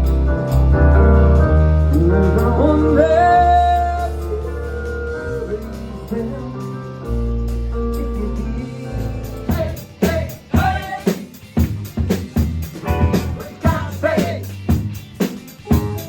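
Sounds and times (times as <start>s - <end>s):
live band playing: 0.0s - 16.0s
person singing: 1.9s - 7.0s, 8.0s - 11.2s, 13.0s - 14.6s.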